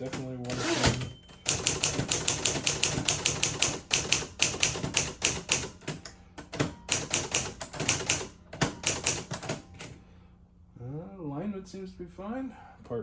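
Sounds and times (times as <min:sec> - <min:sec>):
typewriter key strikes: 0:00.0 - 0:09.6.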